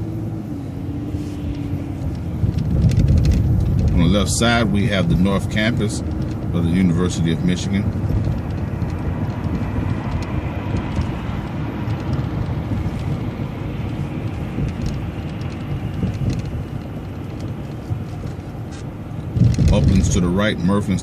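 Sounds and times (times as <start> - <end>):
vehicle engine and road rumble: 0.0 - 21.0.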